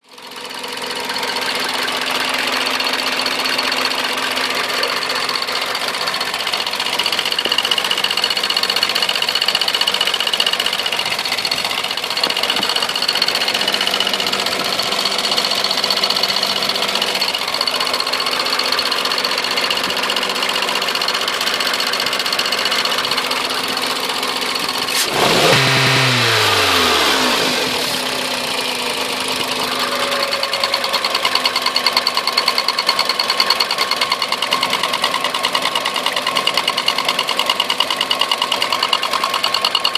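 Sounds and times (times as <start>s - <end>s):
car engine idling with knock: 0.1s - 39.9s
engine revving: 11.4s - 32.0s.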